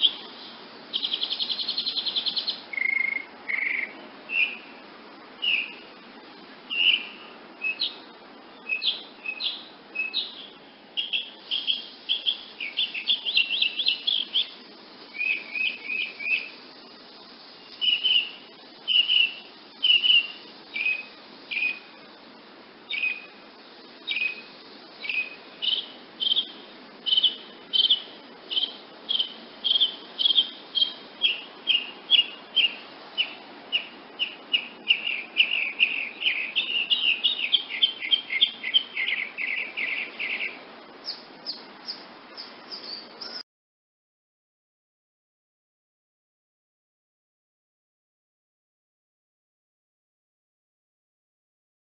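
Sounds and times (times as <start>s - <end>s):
hummingbird chip calls: 0.0s - 4.7s, 5.4s - 6.0s, 6.7s - 8.0s, 8.6s - 16.9s, 17.5s - 22.0s, 22.9s - 23.4s, 24.0s - 43.4s.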